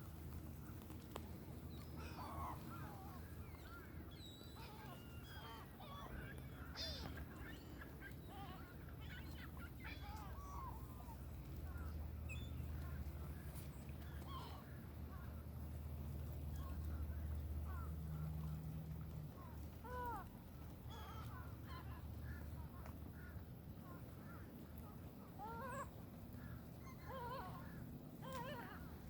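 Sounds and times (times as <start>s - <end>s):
birds calling: 1.7s - 15.3s.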